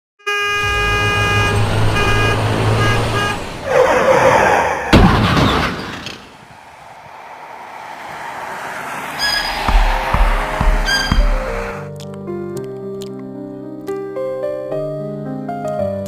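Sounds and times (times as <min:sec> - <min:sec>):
rushing storm noise: 0:00.6 - 0:11.9
thunderclap: 0:04.9 - 0:11.9
steady droning tone: 0:06.7 - 0:11.9.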